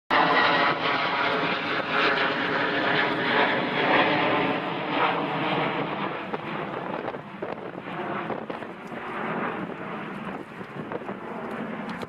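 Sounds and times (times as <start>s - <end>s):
airplane engines running: 0.1s - 12.0s.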